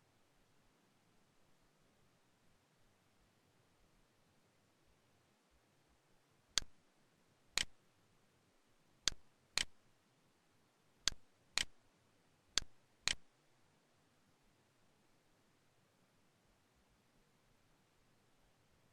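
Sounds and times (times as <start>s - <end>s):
computer mouse clicks: 7.6s - 7.8s, 9.1s - 9.8s, 11.1s - 11.8s, 12.6s - 13.2s.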